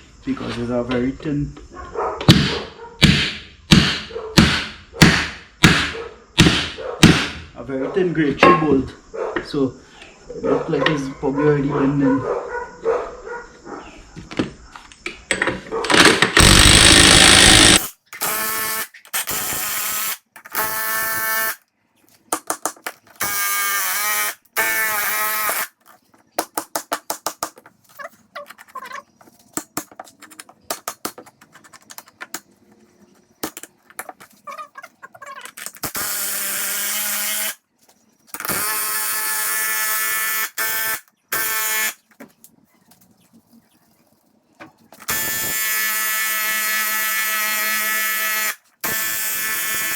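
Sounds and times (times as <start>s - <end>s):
power tool whining: 15.9s - 19.6s, 45.0s - 49.9s.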